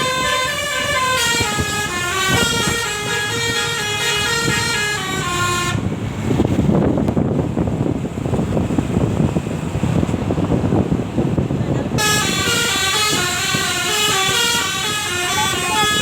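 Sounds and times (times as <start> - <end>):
bus musical horn tune: 0.0 - 6.0, 11.9 - 16.0
loud rumbling noise: 0.0 - 16.0.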